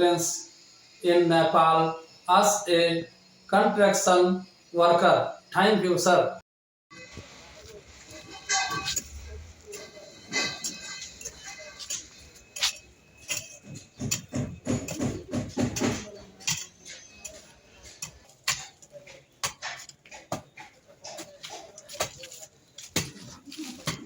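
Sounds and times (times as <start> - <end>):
faint voices: 14.9 - 24.0.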